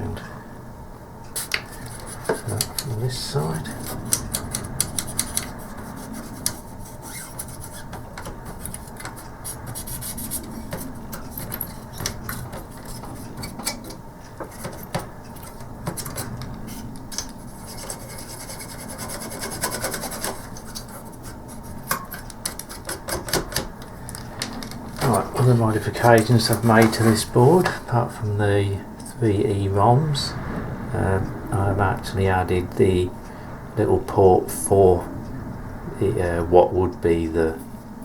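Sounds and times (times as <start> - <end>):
scratchy rubbing on circuit board: 1.4 - 23.7, 24.8 - 27.9.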